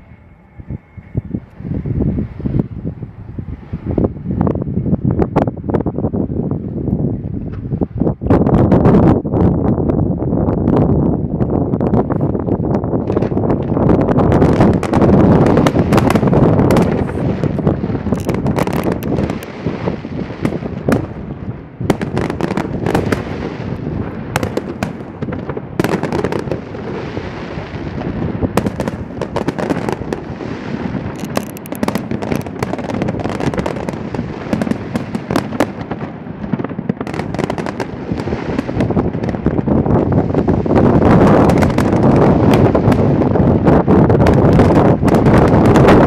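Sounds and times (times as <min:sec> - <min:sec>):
steady rumble: 0:00.0 - 0:27.0
fireworks bangs and crackles: 0:01.1 - 0:46.0.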